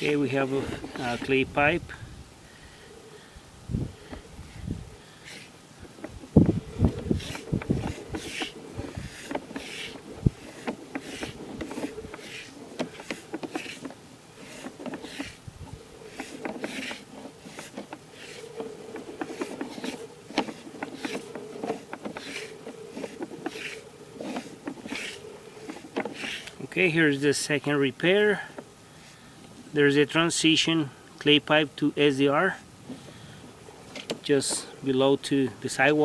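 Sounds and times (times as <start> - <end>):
cable scraping and clicking in pipe: 0.0 - 1.6, 5.3 - 26.7
faint hum: 0.0 - 16.4.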